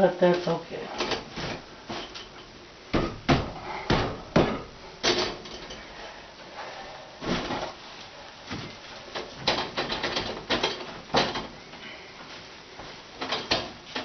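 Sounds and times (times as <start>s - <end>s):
hard parts knocking and clunking: 1.0s - 5.9s, 9.2s - 11.6s, 13.2s - 14.0s.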